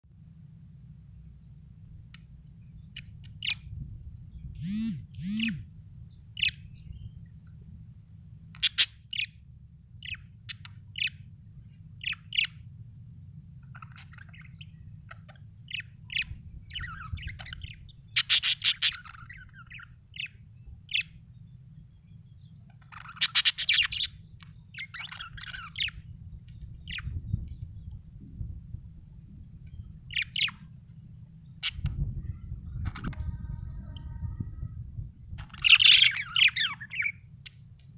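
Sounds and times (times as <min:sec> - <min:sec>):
steady low hum: 0:00.1 - 0:37.9
budgerigar chirping: 0:04.6 - 0:05.6, 0:08.6 - 0:09.3, 0:13.7 - 0:21.2, 0:22.8 - 0:24.2, 0:35.4 - 0:37.2.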